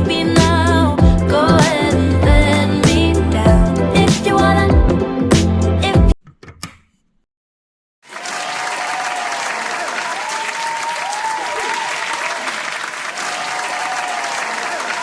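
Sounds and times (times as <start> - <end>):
music: 0.0 - 6.2
audience applause: 8.1 - 15.0.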